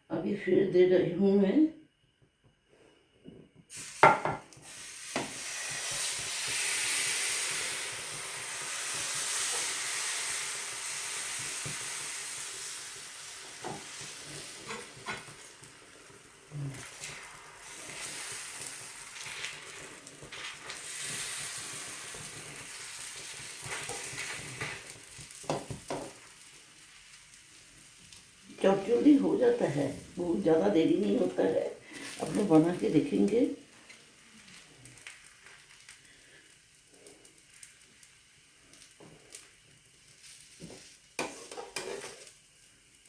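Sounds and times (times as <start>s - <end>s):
batter sizzling on a pan: 3.7s - 43.0s
utensil knocking on pan: 4.0s - 4.4s.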